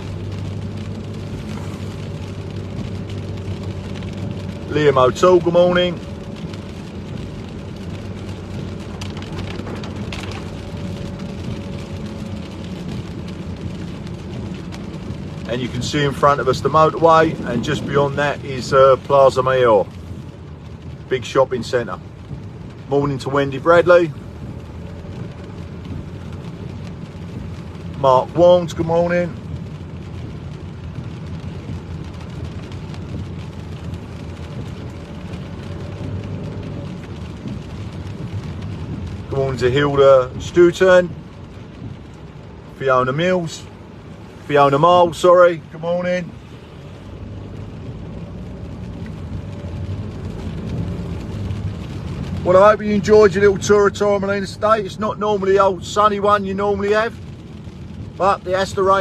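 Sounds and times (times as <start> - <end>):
hiss of spray from wet road: 0.0 - 16.2, 19.4 - 21.1
car engine and road rumble: 0.0 - 59.0
rain and spray hiss: 0.0 - 59.0.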